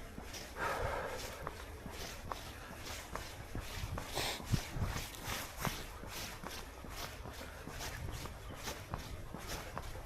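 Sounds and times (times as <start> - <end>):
running footsteps on path: 0.0 - 10.0
low wind rumble on microphone: 2.2 - 10.0.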